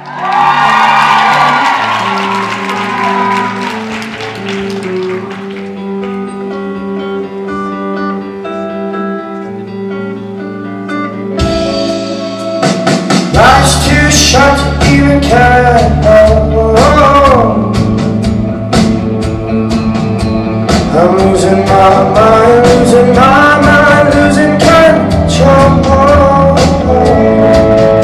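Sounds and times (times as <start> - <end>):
crowd cheering: 0.0 - 6.3
live rock band playing: 0.2 - 28.0
picked guitar notes: 1.4 - 28.0
lead vocals: 13.2 - 18.1, 20.6 - 28.0.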